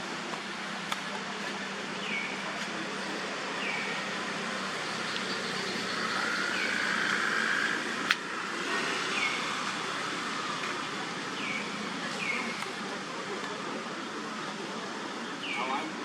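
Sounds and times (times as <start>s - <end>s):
outdoor background rush: 0.0s - 16.0s.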